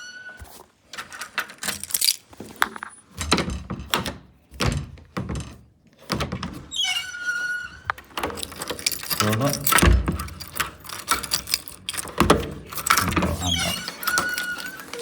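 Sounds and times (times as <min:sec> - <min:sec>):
short squeak: 0:00.0 - 0:00.6
metal lock hardware clunks: 0:07.9 - 0:15.0.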